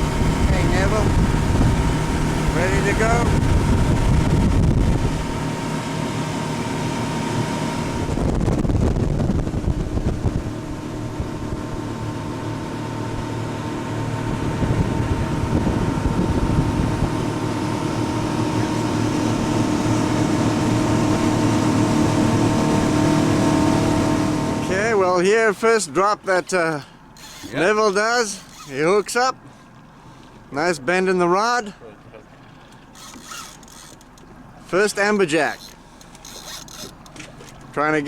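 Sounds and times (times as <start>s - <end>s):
motorboat engine droning: 0.0s - 38.0s.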